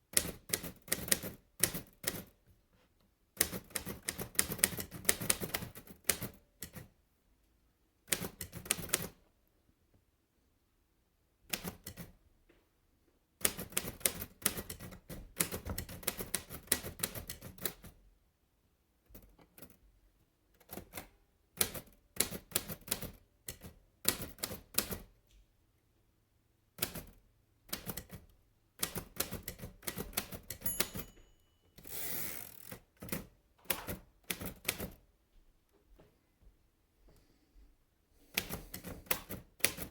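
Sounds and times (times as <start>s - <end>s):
typewriter key strikes: 28.8s - 31.3s.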